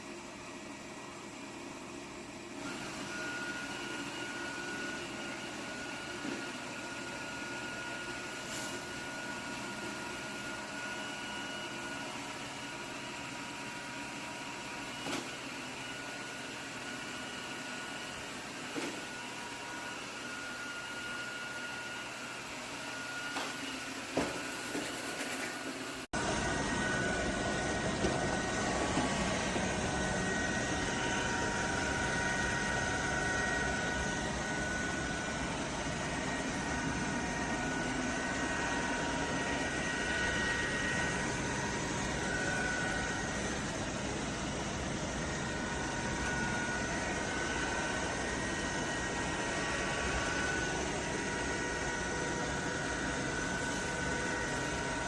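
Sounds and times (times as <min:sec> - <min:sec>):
robot vacuum whirring: 0:22.9 - 0:55.0.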